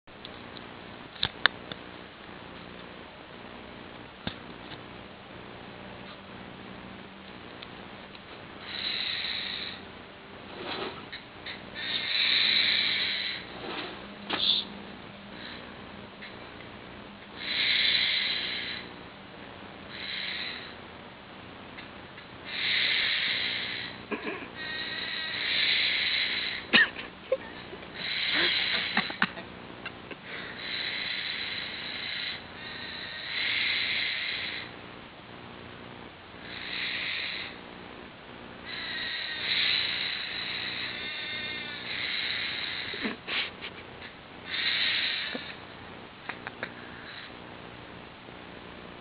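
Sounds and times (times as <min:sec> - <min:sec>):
harsh hissing animal calls: 0:08.6 - 0:16.5, 0:17.3 - 0:19.0, 0:19.9 - 0:20.9, 0:21.8 - 0:34.8, 0:36.4 - 0:37.7, 0:38.6 - 0:47.4.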